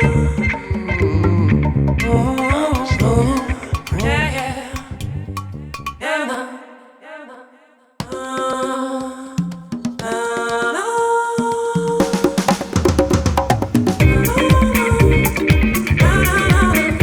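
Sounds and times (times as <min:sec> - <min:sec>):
drums: 0:00.0 - 0:06.0, 0:08.0 - 0:17.0
song with held tones and slides: 0:14.0 - 0:17.0.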